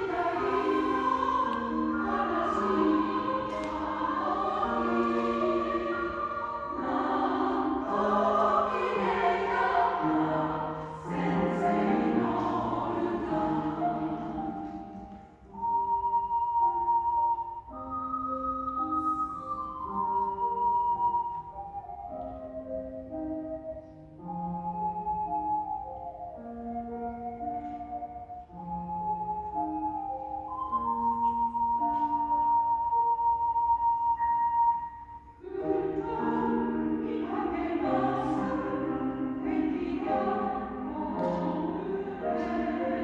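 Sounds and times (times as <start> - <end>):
choir singing: 0.0 - 16.0, 35.3 - 43.0
piano playing held notes: 0.0 - 43.0.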